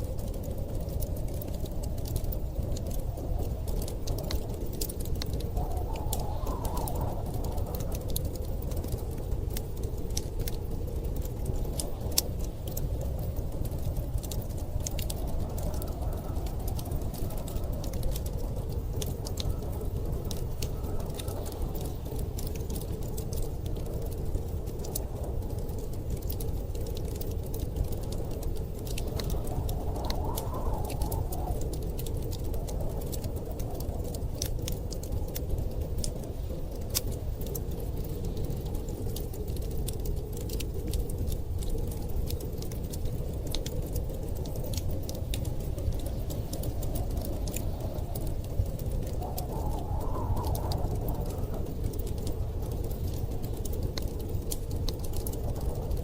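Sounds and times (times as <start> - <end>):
howling storm wind: 0.0 - 56.0
wood fire crackling: 0.0 - 56.0.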